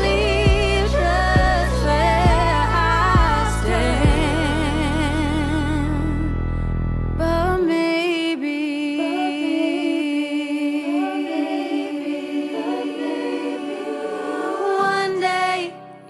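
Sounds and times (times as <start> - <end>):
deep held tone: 0.0 - 8.2
voices singing long notes: 0.0 - 16.0.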